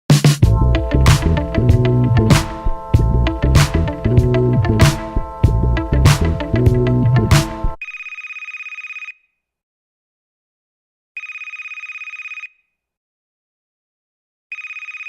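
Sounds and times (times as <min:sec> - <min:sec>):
telephone ringing: 0:14.5 - 0:15.0.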